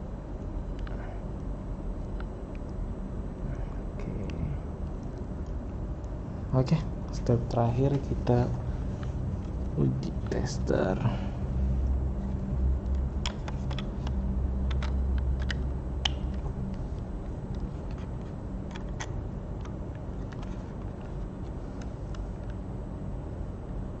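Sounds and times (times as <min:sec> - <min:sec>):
plastic clicks of cable plugs: 0:12.8 - 0:16.4.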